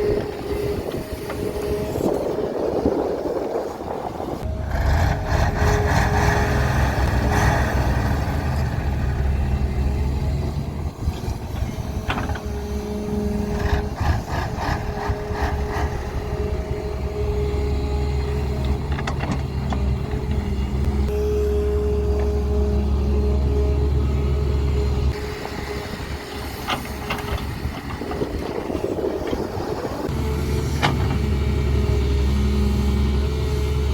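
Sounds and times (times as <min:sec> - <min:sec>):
excavator diesel engine droning: 0:00.0 - 0:33.9.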